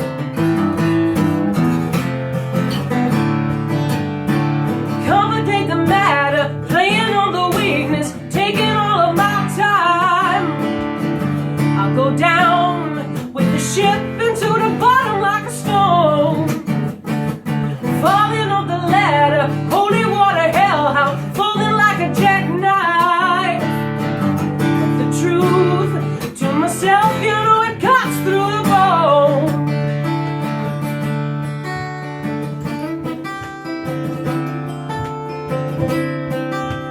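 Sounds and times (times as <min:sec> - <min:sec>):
acoustic guitar strumming: 0:00.0 - 0:36.9
person singing: 0:04.9 - 0:16.7, 0:17.9 - 0:29.7.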